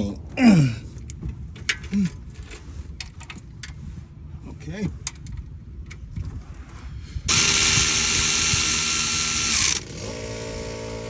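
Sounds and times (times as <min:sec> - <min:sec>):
electric power tool running: 0:07.3 - 0:11.0.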